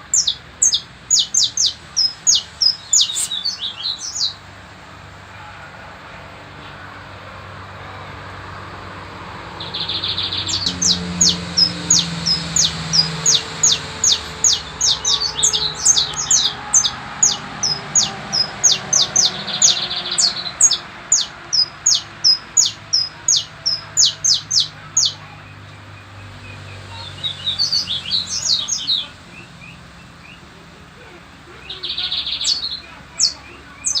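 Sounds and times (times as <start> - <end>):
finch singing sharp high notes: 0.0 - 4.5, 9.6 - 30.5.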